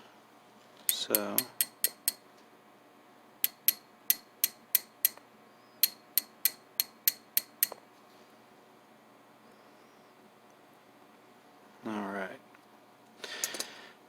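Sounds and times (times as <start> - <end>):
light sharp metallic taps: 5.8 - 7.8.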